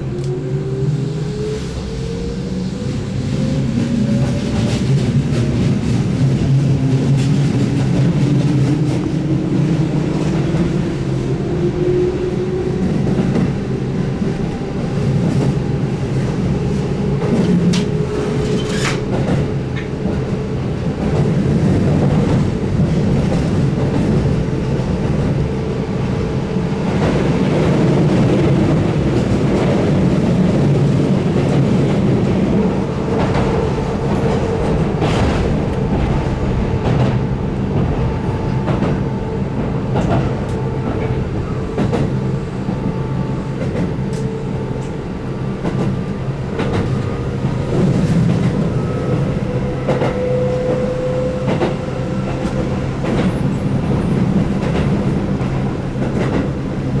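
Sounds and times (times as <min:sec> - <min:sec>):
electric train motor whine: 0:00.0 - 0:05.5.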